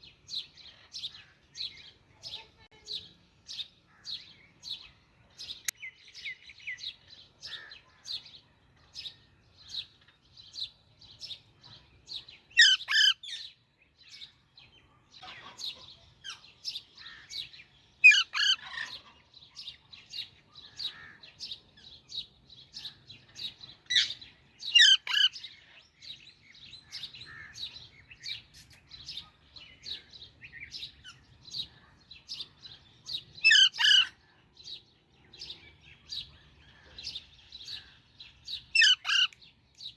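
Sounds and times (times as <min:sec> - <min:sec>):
parakeet harsh squawk: 0:33.4 - 0:34.1.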